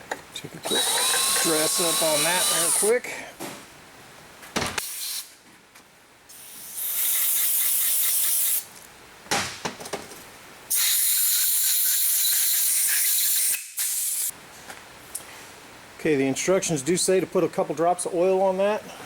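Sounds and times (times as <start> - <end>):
compressed air blasts from blow gun: 4.8 - 5.3, 6.3 - 8.7, 10.7 - 14.3.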